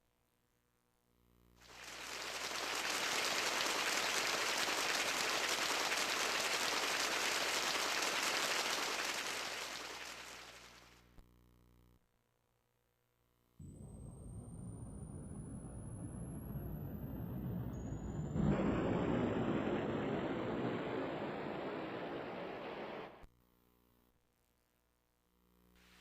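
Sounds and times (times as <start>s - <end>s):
crackly rushing noise effect: 1.6s - 10.9s, 16.4s - 23.2s.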